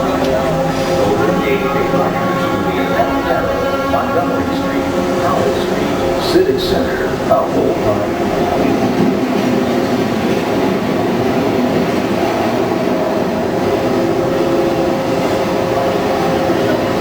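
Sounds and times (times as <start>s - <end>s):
faint steady whine: 0.0s - 17.0s
train wheels rumbling on rails: 0.0s - 17.0s.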